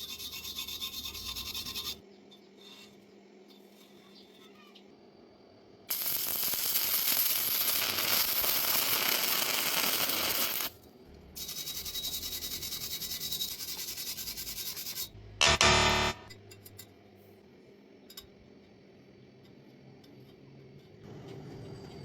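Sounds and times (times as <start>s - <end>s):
electric arc welding crackling hiss: 5.9s - 10.8s.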